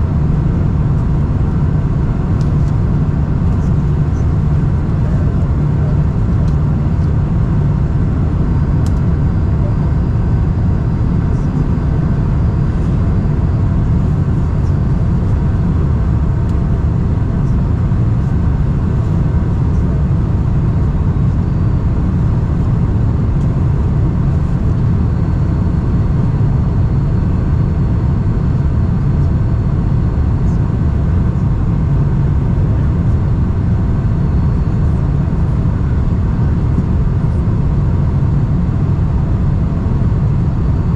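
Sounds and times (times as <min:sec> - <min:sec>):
aircraft engines rumbling: 0:00.0 - 0:40.9
faint steady whines: 0:00.0 - 0:40.9.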